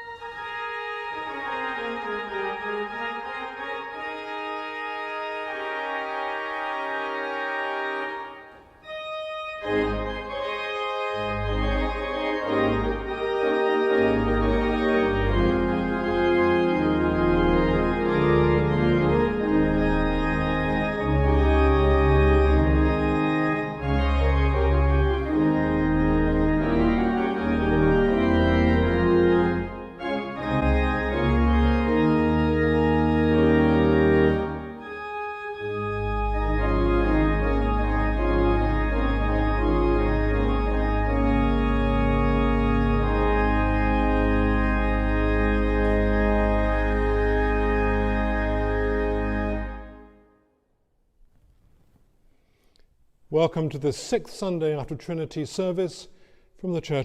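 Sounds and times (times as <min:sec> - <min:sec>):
church organ chords: 0:00.0 - 0:50.4.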